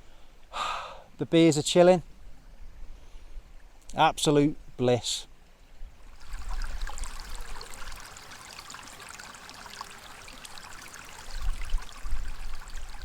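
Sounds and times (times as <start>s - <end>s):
water trickling and lapping: 5.4s - 13.0s
wind rumble on microphone: 11.3s - 13.0s.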